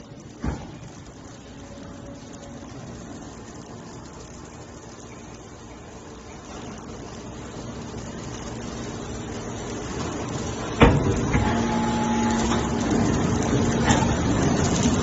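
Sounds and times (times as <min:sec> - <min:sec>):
hydraulic baler drone: 0:09.9 - 0:15.0.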